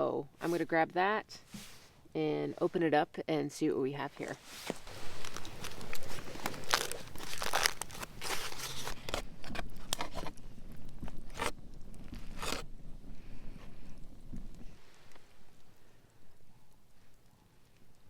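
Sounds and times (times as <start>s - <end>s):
plastic wrapping crinkling: 4.2s - 10.4s.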